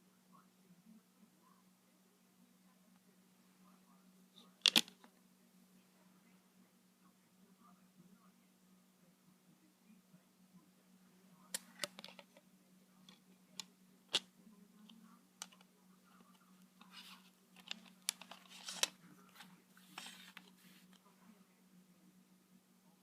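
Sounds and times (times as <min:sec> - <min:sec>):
plastic cd case clicks: 0:04.6 - 0:05.0.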